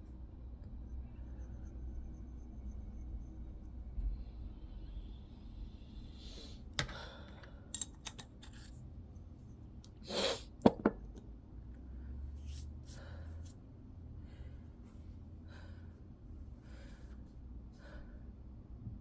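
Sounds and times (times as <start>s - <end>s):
person sniffing and inhaling: 10.0s - 10.5s.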